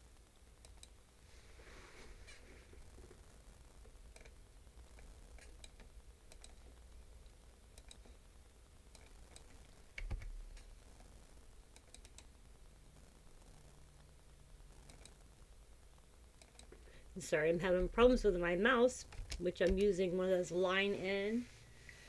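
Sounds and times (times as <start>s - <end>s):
computer mouse and keyboard clicks: 4.1s - 6.7s, 7.8s - 8.2s, 8.9s - 10.7s, 11.7s - 12.3s, 14.8s - 15.2s, 16.4s - 16.8s, 19.0s - 19.9s.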